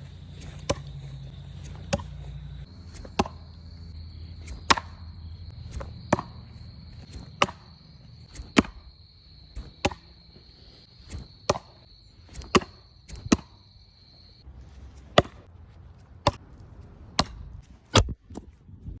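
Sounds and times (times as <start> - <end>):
tomahawk blades thunking into wood: 1.7 - 2.2, 3.0 - 3.4, 7.4 - 7.7.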